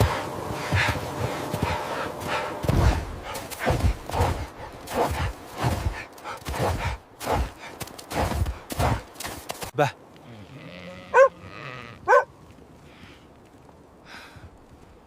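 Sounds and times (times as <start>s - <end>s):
footsteps crunching through snow: 0.0s - 9.8s.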